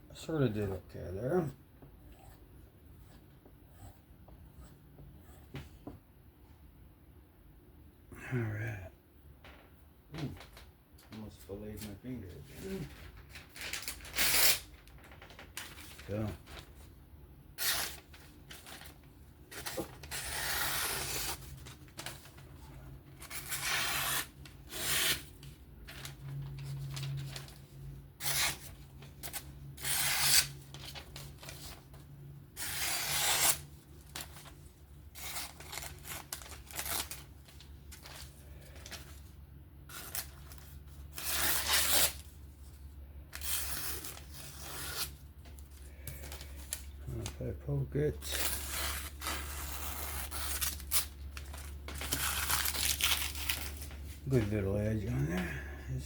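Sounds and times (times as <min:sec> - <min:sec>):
knife slicing paper: 0:17.6 - 0:18.9, 0:19.5 - 0:22.2, 0:23.2 - 0:25.3, 0:28.2 - 0:31.8, 0:32.6 - 0:33.6, 0:39.9 - 0:42.3, 0:48.2 - 0:53.8.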